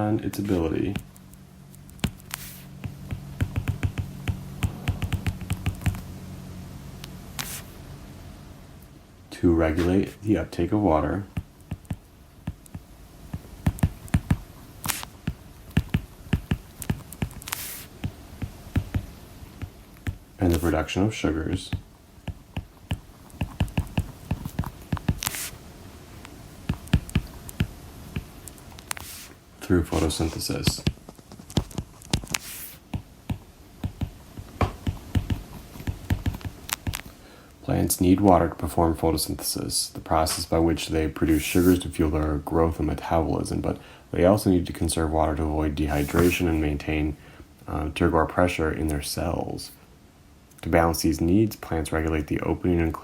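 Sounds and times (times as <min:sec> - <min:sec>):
low steady hum: 0:00.0 - 0:53.0
sharp clicks or taps: 0:02.8 - 0:06.0.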